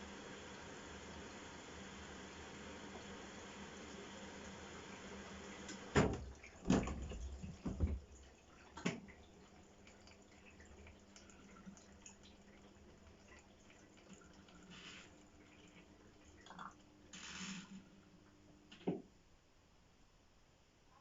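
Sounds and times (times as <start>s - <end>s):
washing machine hiss: 0.0s - 6.2s, 14.6s - 15.2s, 17.1s - 18.0s
water dripping and trickling: 0.1s - 16.9s
washing machine clunks: 5.7s - 8.1s.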